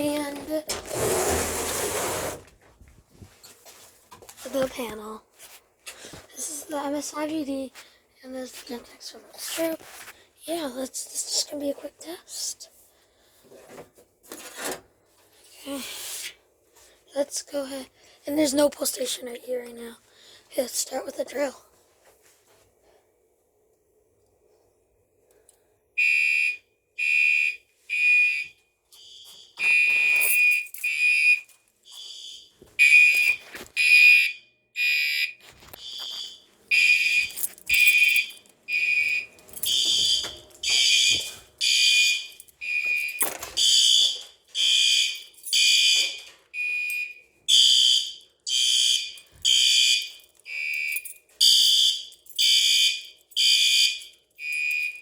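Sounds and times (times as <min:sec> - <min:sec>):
fire alarm horns beeping: 0:26.0 - 0:55.0.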